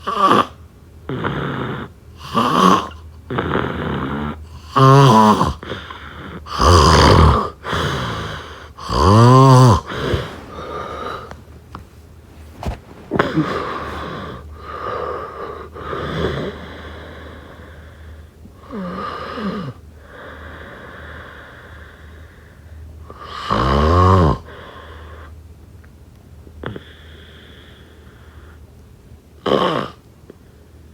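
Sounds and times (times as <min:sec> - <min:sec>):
person snoring: 0:06.5 - 0:17.8.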